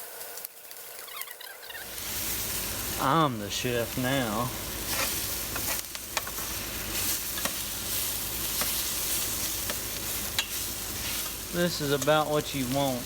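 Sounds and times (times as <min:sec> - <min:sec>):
vegetables sizzling in oil: 0:00.0 - 0:13.0
utensil clicking against pan: 0:08.6 - 0:08.8, 0:09.6 - 0:10.6.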